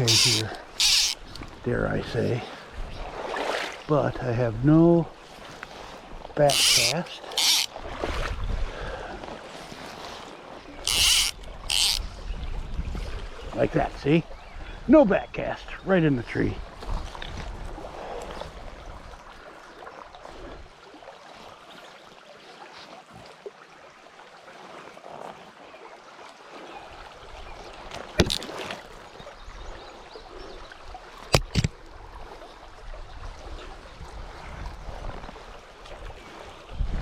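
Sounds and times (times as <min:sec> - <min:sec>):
small creek running: 0:00.0 - 0:37.0
wind rumble on microphone: 0:07.8 - 0:09.1, 0:11.5 - 0:13.7, 0:16.5 - 0:19.3, 0:31.5 - 0:37.0.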